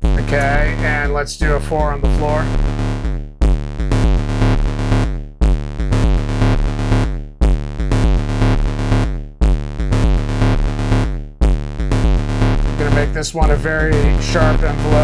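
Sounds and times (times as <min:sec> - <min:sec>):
synthesizer looping pattern: 0:00.0 - 0:02.9, 0:12.4 - 0:15.0
four-on-the-floor kick drum: 0:00.0 - 0:15.0.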